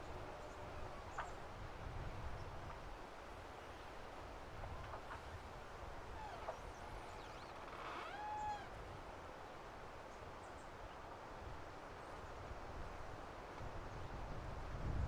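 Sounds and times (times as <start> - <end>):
wind rumbling on microphone: 0.0 - 9.3, 11.4 - 15.0
high animal call: 6.1 - 8.8.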